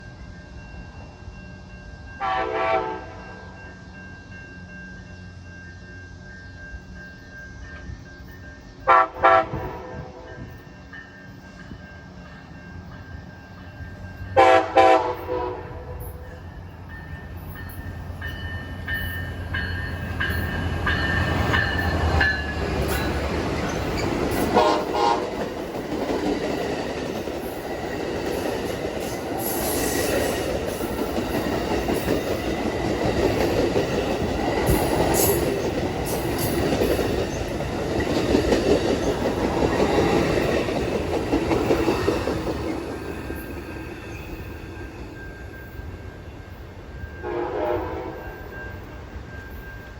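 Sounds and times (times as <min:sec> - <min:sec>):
rail and wheel clickety-clack: 0:00.0 - 0:49.9
locomotive horn toots: 0:02.2 - 0:03.3, 0:08.9 - 0:10.3, 0:14.4 - 0:16.2, 0:24.4 - 0:25.5, 0:47.2 - 0:48.4.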